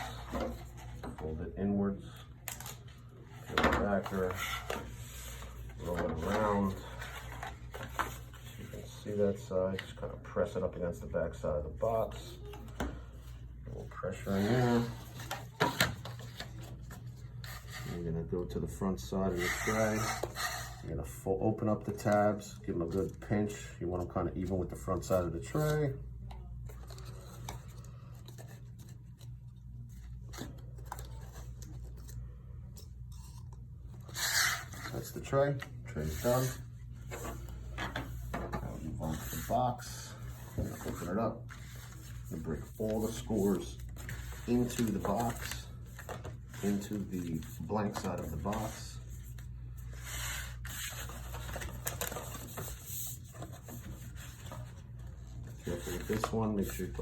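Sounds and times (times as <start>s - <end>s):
steady low hum: 0.0s - 57.0s
paperboard creasing clicks and rustles: 50.0s - 57.0s.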